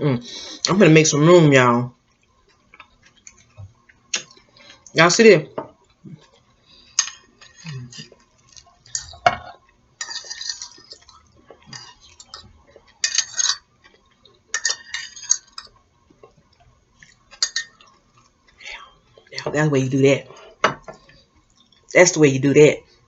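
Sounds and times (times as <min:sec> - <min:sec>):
utensils scraping on a plate: 0:10.0 - 0:13.7, 0:14.5 - 0:15.7.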